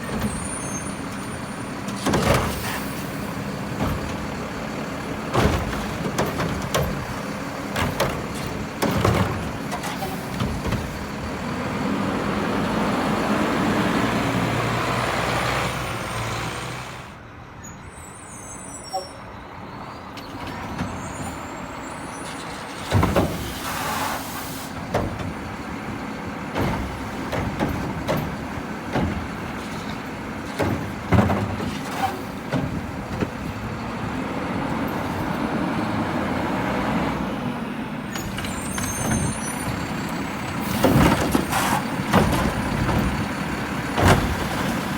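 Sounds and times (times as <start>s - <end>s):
garbage truck engine running: 0.0s - 17.2s, 19.4s - 44.9s
air brakes hissing: 0.1s - 3.7s, 9.7s - 10.9s, 20.2s - 25.1s, 38.1s - 43.2s
knocks and clunks of containers: 1.9s - 2.8s, 3.7s - 4.5s, 5.2s - 11.3s, 22.8s - 23.6s, 24.8s - 33.8s, 38.1s - 44.9s.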